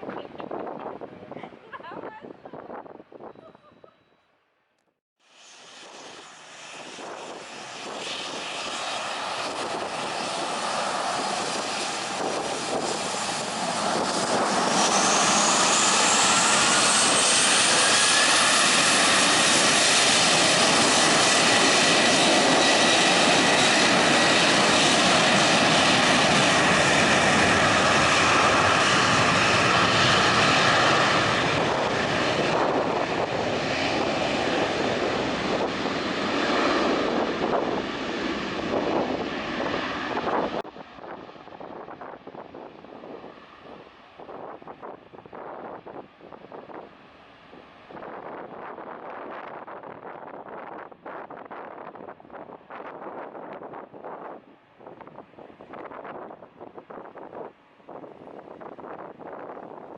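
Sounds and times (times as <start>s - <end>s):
jet engines whining: 5.5s - 50.4s.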